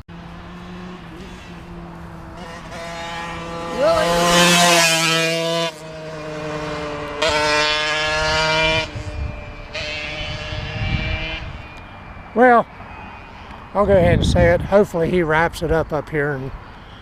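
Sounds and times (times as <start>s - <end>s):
scooter engine revving past: 0.1s - 11.8s.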